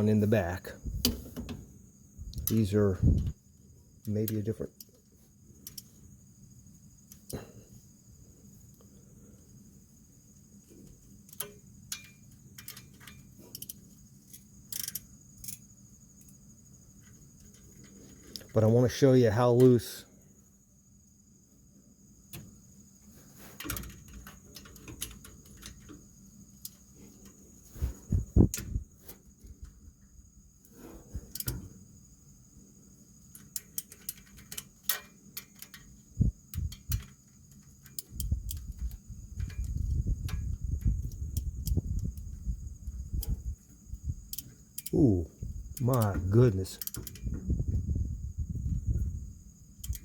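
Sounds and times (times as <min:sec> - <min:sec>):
crickets trilling: 0:00.0 - 0:50.0
socket wrench clicking on bolts: 0:05.6 - 0:05.9, 0:11.2 - 0:15.7, 0:23.6 - 0:26.0, 0:31.3 - 0:31.7, 0:33.3 - 0:42.2, 0:44.3 - 0:45.0, 0:46.8 - 0:47.4, 0:49.8 - 0:50.0
metal clatter of handling: 0:10.7 - 0:15.7, 0:17.0 - 0:18.7, 0:23.4 - 0:27.4, 0:33.2 - 0:40.9, 0:45.7 - 0:47.5.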